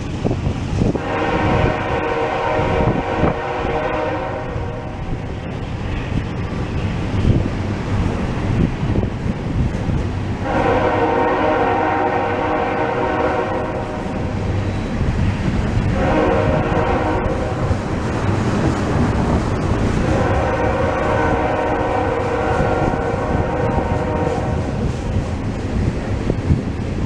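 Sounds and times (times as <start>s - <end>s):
low rumble of passing train: 0.0s - 27.0s
locomotive air horn chord: 1.0s - 5.1s, 10.4s - 14.2s, 16.0s - 17.8s, 20.0s - 24.8s.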